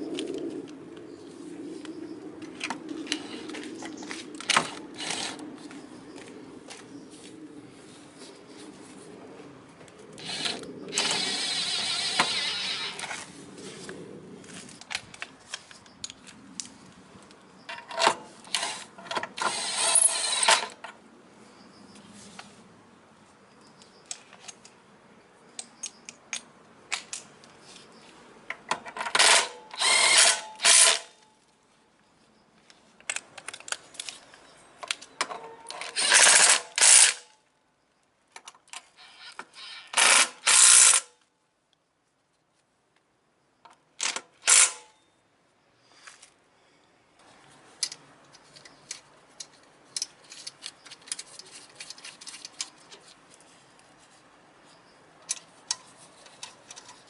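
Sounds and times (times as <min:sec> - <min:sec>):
ratcheting power tool: 0:10.2 - 0:13.2, 0:17.9 - 0:20.8, 0:29.0 - 0:31.1, 0:35.8 - 0:37.2, 0:39.0 - 0:41.1, 0:44.0 - 0:44.8
metal clicks and taps: 0:25.5 - 0:27.3, 0:47.8 - 0:53.0, 0:55.2 - 0:57.0.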